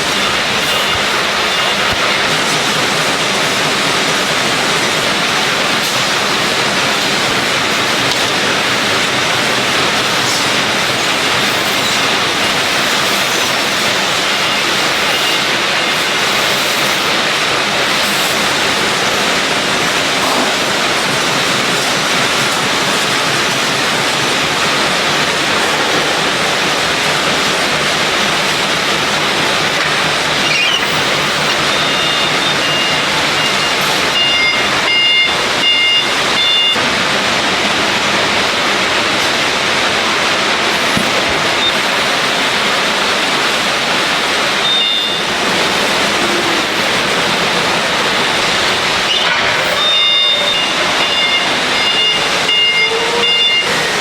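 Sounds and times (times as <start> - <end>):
machinery hissing: 0.0 - 54.0.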